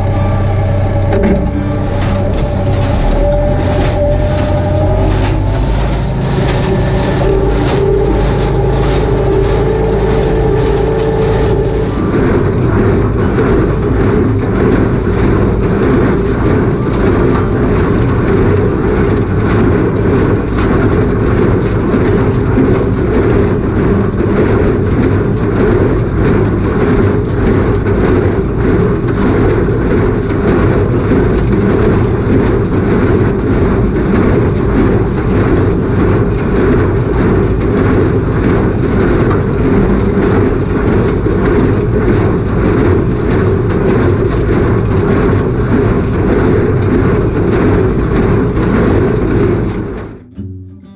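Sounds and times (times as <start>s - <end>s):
hay implement clatter: 0.0s - 50.2s
tractor diesel engine running: 0.0s - 50.3s
higher steady hum: 0.0s - 50.9s.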